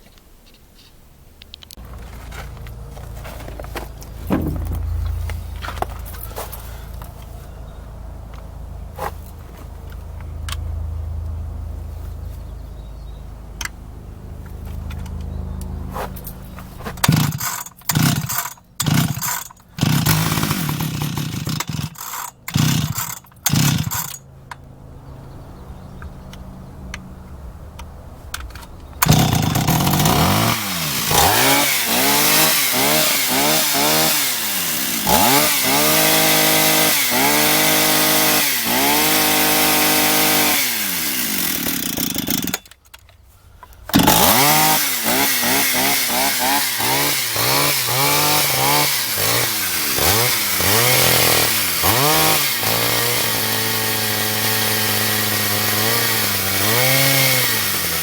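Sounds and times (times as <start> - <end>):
chainsaw revving and idling: 1.8 - 7.3, 16.0 - 24.2, 29.0 - 42.7, 43.9 - 58.0.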